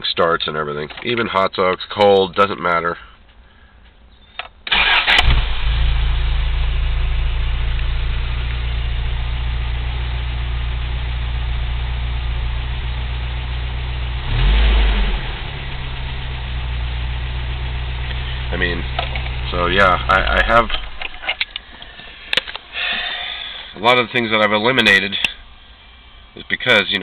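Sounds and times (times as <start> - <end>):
car engine starting and idling: 4.6 - 26.8
engine revving: 4.7 - 9.9, 12.5 - 20.6.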